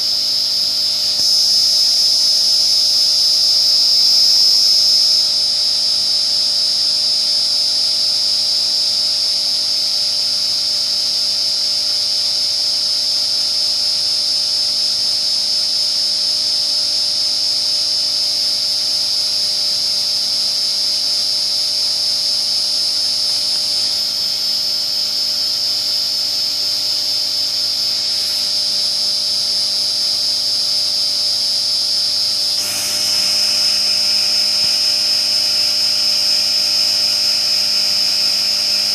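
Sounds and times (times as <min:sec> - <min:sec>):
air blast hissing: 0:32.6 - 0:37.6
milling machine spindle cutting: 0:32.6 - 0:38.9.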